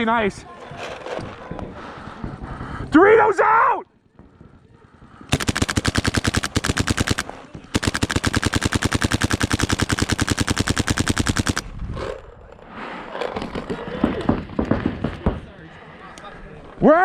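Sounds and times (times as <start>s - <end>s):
paintball marker firing rapid shots: 5.3s - 11.7s.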